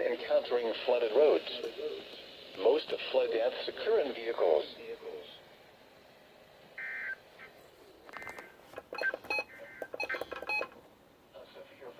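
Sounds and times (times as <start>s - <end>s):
crackling clicks: 8.0s - 10.8s.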